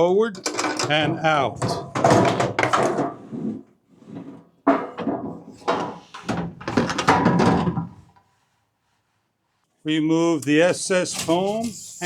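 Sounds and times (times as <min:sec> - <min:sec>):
metal clunks and scrapes: 0:00.4 - 0:08.2, 0:11.1 - 0:12.0.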